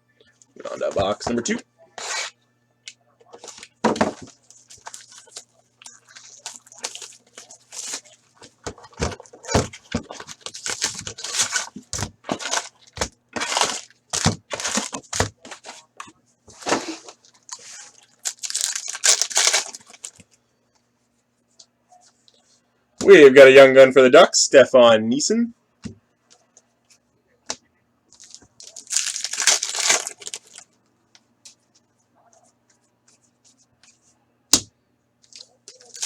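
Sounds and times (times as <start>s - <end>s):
faint steady hum: 0.0s - 36.0s
packaging tearing and crinkling: 3.4s - 8.2s, 9.2s - 15.3s, 16.9s - 20.2s, 28.2s - 30.7s, 35.3s - 36.0s.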